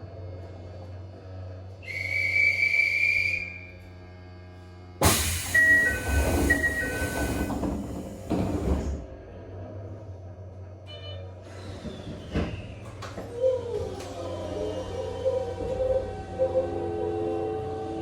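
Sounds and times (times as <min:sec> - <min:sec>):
train doors rush of noise: 0:05.0 - 0:09.6, 0:11.4 - 0:18.0
train doors shutting: 0:05.0 - 0:10.0, 0:10.8 - 0:18.0.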